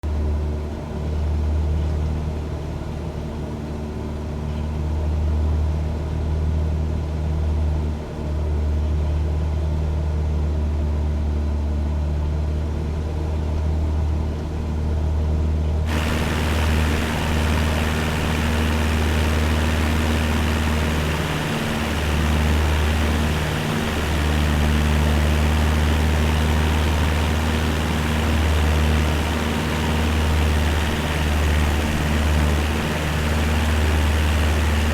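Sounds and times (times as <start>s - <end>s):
aircraft engine drone in cabin: 15.9s - 34.9s
rushing hiss: 15.9s - 34.9s.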